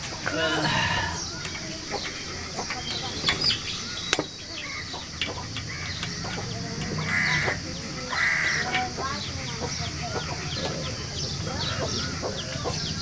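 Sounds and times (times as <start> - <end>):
chickens clucking: 0.0 - 13.0
sharp clicks: 3.3 - 4.4.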